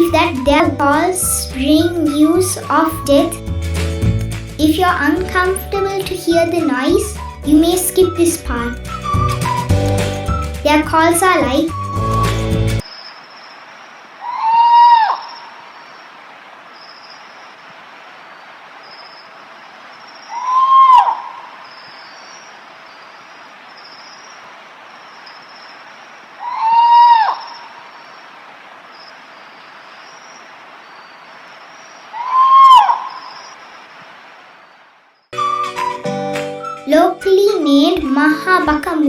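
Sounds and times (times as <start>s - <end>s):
steady hiss: 12.8s - 14.4s, 15.1s - 20.6s, 21.2s - 26.6s, 27.3s - 32.3s, 32.9s - 35.3s
owl wailing call: 14.2s - 15.6s, 20.3s - 22.4s, 26.4s - 27.9s, 32.1s - 33.6s
faint high chirping: 18.4s - 28.3s, 28.9s - 33.9s.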